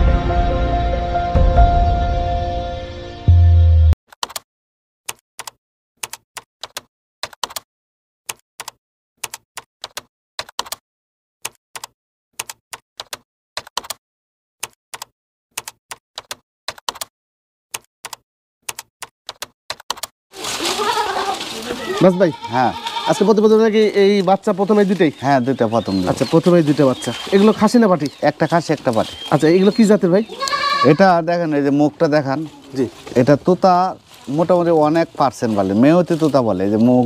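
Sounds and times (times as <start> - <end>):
short low boom: 0.0 - 3.5
keyboard key clicks: 4.2 - 4.4, 5.1 - 7.6, 8.6 - 10.8, 11.4 - 14.0, 14.6 - 17.1, 17.7 - 20.1.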